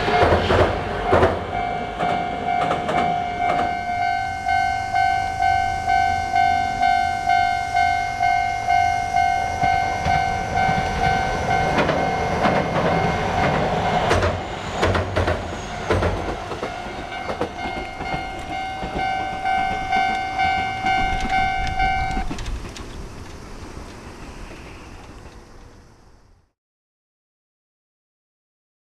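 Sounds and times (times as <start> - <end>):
train wheels clacking on rails: 0.0 - 25.8
level-crossing bell ringing: 1.5 - 13.8, 15.7 - 22.2.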